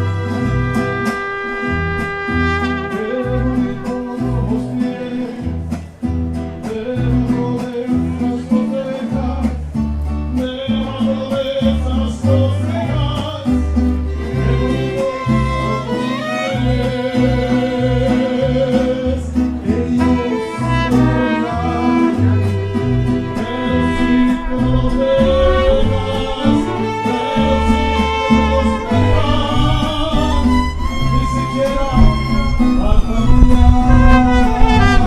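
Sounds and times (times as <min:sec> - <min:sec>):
guitars: 0:00.0 - 0:35.0
violins: 0:14.1 - 0:18.8, 0:19.9 - 0:35.0
singing: 0:14.1 - 0:35.0
pulsing deep bass line: 0:19.8 - 0:35.0.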